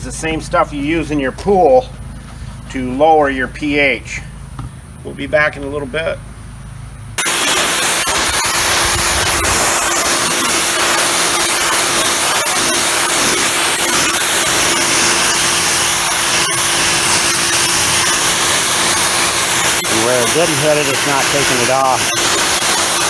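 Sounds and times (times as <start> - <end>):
steady hum: 0.0 - 23.0
water spray hitting concrete: 7.2 - 23.0.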